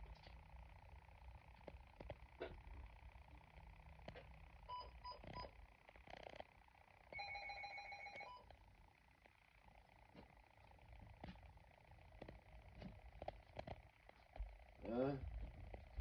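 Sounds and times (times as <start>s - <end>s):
pulsing alarm tone: 7.1s - 8.5s.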